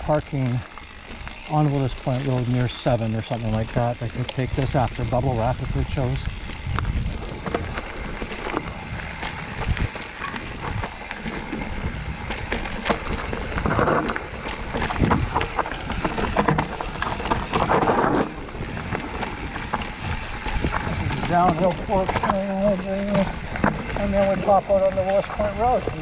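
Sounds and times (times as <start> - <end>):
bike tyres rolling over ground: 0.0 - 26.0
wind rushing over microphone: 1.7 - 26.0
bike clattering knocks: 10.3 - 20.0, 20.6 - 24.5.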